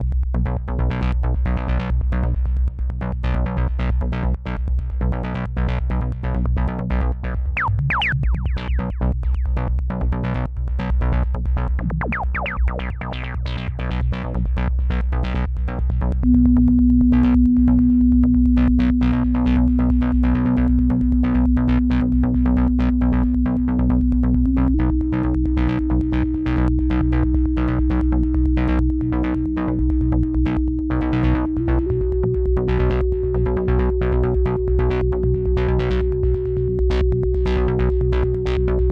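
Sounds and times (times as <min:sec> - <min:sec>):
low bass: 0:00.0 - 0:38.9
synth pitch sweeps: 0:07.6 - 0:09.0, 0:16.2 - 0:38.9
loud held synth tone: 0:16.2 - 0:38.9.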